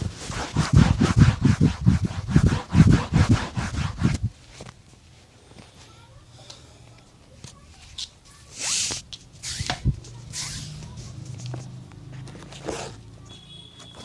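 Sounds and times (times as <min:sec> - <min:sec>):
swishing strokes on leather: 0:00.0 - 0:04.7, 0:08.5 - 0:11.3.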